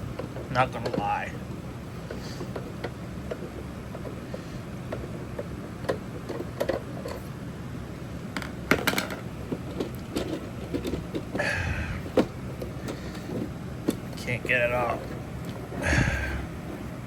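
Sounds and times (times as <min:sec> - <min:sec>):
plastic speaker cabinet handled: 0:08.7 - 0:16.9.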